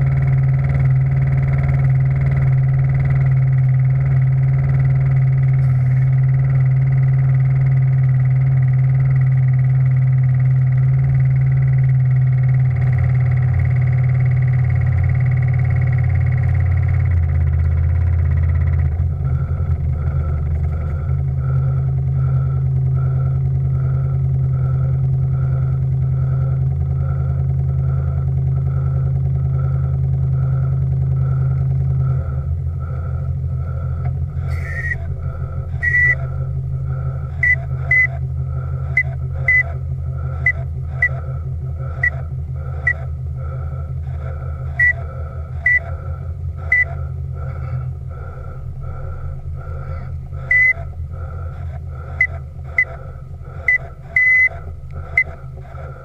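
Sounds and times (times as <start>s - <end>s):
soft regular pulse: 0.0s - 56.0s
steady tones: 0.0s - 56.0s
steam engine humming: 0.0s - 56.0s.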